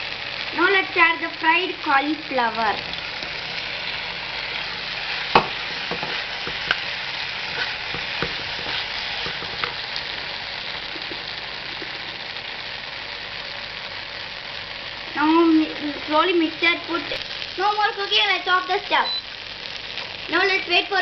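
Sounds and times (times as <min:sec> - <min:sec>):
food sizzling in a pan: 0:00.0 - 0:21.0
utensil knocking against pan: 0:05.4 - 0:06.8.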